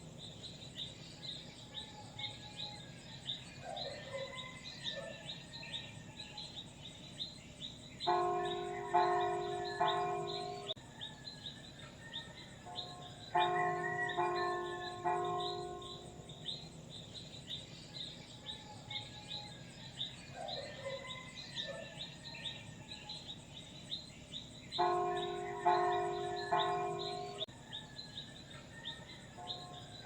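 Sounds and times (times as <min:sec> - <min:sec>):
birds chirping: 0:06.2 - 0:10.8, 0:23.3 - 0:27.9
church bell ringing: 0:08.1 - 0:10.8, 0:12.7 - 0:16.6, 0:24.8 - 0:27.5.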